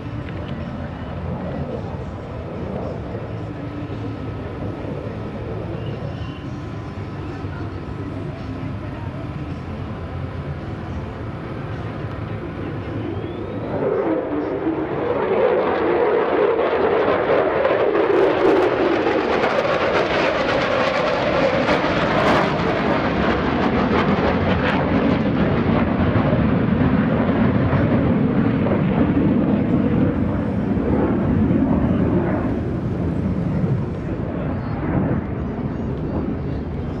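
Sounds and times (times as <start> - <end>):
jet flying past: 11.3 - 37.0.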